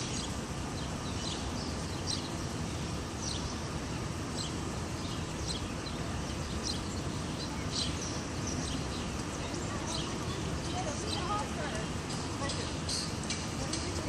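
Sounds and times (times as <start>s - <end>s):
bird chirping: 0.0s - 14.0s
low rumble of city traffic: 0.0s - 14.0s.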